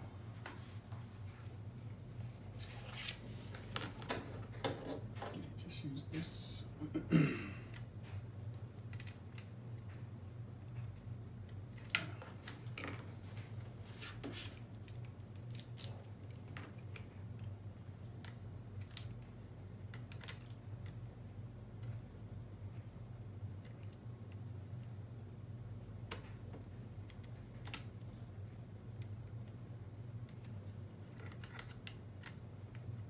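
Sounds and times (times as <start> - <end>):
tools and small parts clicking: 11.5 - 13.2, 14.8 - 17.6.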